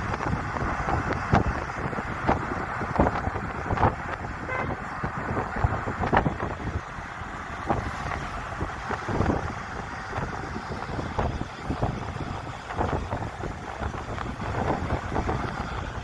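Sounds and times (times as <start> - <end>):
car road noise: 0.0 - 16.0
wind thumps on microphone: 0.0 - 16.0
car horn toot: 4.4 - 4.9.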